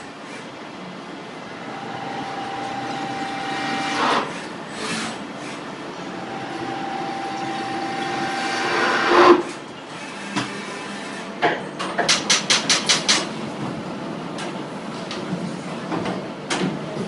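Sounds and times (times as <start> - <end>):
milling machine cutting metal: 1.4 - 10.1.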